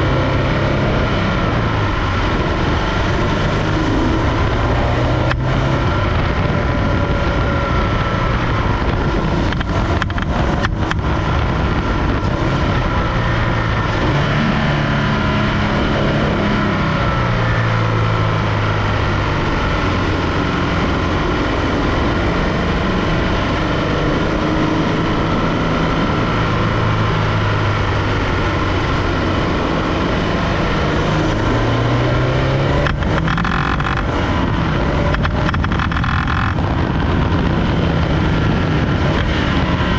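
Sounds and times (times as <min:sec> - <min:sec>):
car engine running loud: 0:00.0 - 0:39.9.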